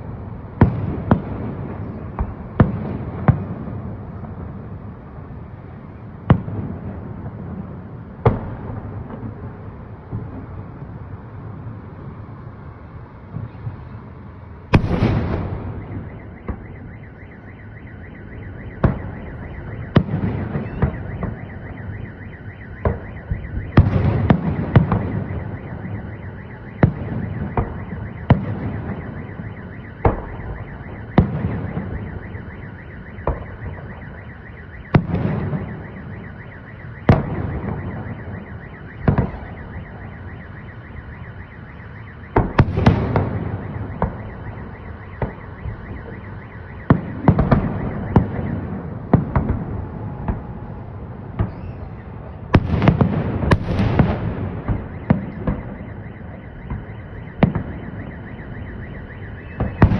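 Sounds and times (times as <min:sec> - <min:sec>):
car alarm: 0:15.0 - 0:59.9.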